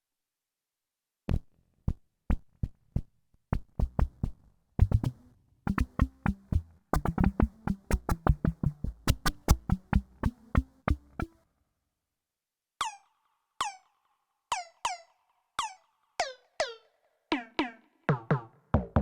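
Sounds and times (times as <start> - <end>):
synthesizer plucky notes: 4.8 - 11.4.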